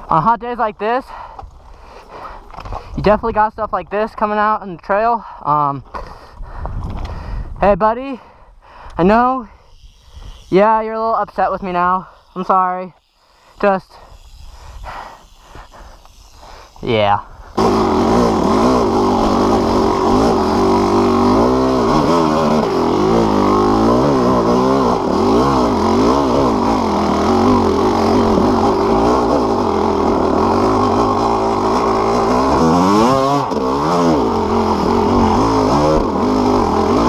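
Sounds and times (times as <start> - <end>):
dirt bike engine revving: 17.5 - 37.0.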